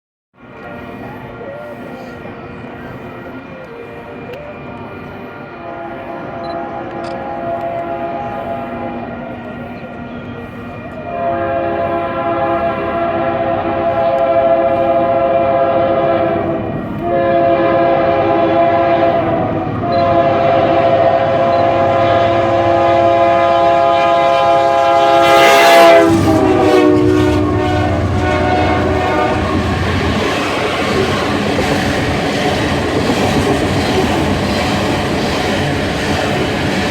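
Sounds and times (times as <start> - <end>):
train cars rumbling and clattering: 0.4 - 36.9
locomotive horn chord: 5.4 - 31.6.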